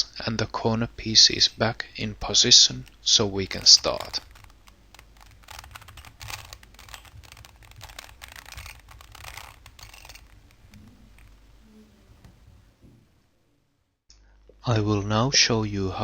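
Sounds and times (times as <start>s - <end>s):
puzzle cube clicking as turned: 2.8s - 11.4s.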